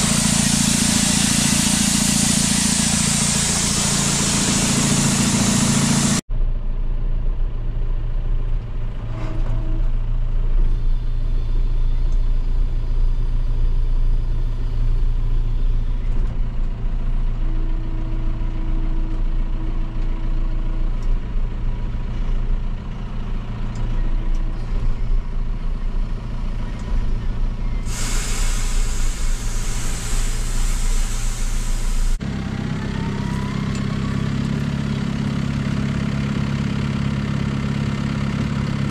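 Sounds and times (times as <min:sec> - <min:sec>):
air hissing: 0:00.0 - 0:06.2, 0:27.7 - 0:32.2
truck engine running: 0:00.0 - 0:38.9.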